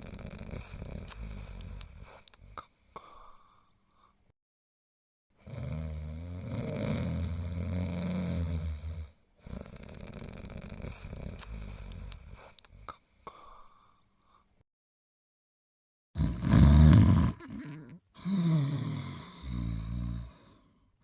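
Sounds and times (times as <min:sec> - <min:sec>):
cartoon character snoring: 0:00.0 - 0:02.2, 0:05.4 - 0:12.6, 0:16.2 - 0:20.7.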